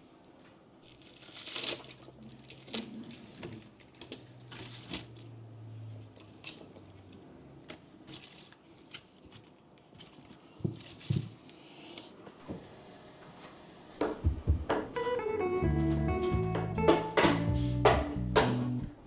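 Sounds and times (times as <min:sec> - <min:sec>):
packaging crinkling: 0:00.8 - 0:05.2, 0:07.8 - 0:11.2.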